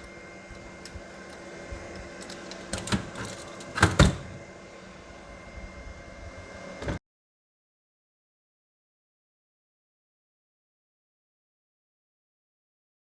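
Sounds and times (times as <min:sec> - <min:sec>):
steady low hum: 0:00.0 - 0:07.0.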